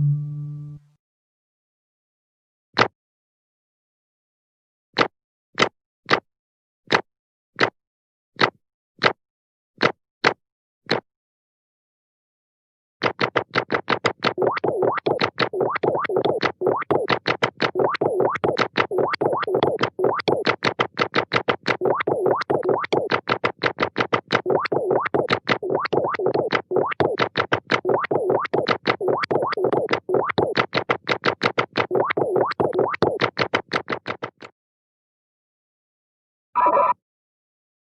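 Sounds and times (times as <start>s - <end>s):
rapid synthesized cartoon notes: 14.4s - 34.3s.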